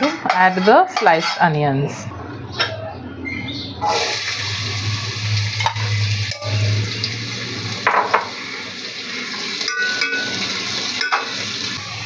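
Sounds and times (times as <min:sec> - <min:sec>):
spatula scraping pan: 0:00.0 - 0:01.6
onions sizzling in oil: 0:03.8 - 0:12.0.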